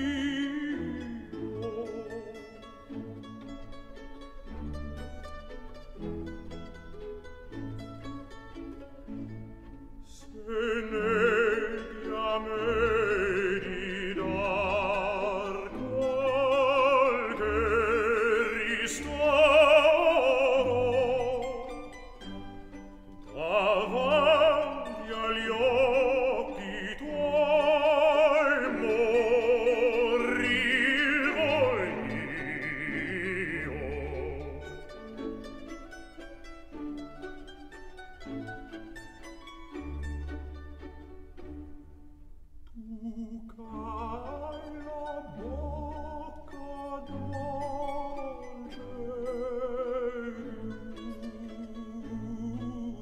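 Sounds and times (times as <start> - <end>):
operatic singing voice: 0.0 - 2.4, 10.0 - 21.8, 23.3 - 35.0, 42.7 - 53.0
orchestral accompaniment: 0.0 - 42.5.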